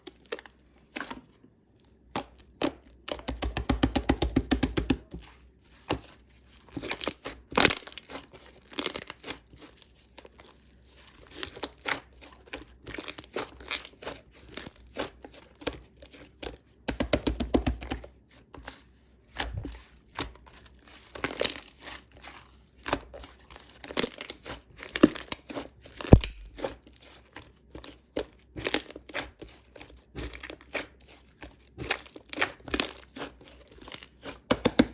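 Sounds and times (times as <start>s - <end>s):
slime squeezed sticky popping: 26.1s - 26.7s.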